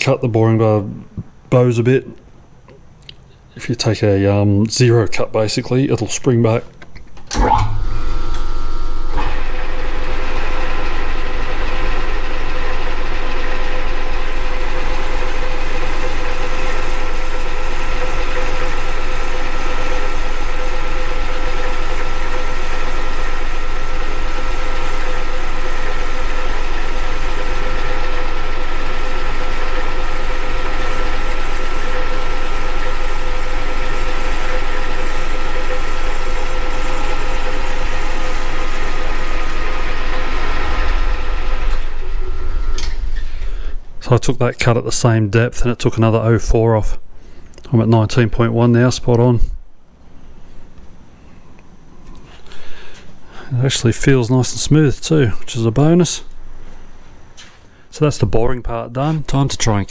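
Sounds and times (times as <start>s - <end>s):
metal lathe motor whining: 6.8s - 44.0s.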